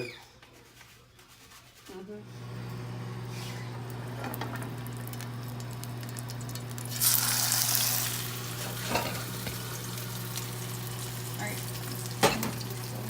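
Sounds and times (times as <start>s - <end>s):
chicken sizzling in a pan: 2.6s - 13.0s.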